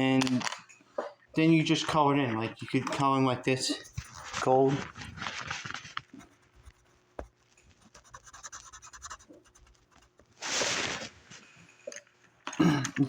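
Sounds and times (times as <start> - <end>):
drawing tool scratching on paper: 3.7 - 11.4.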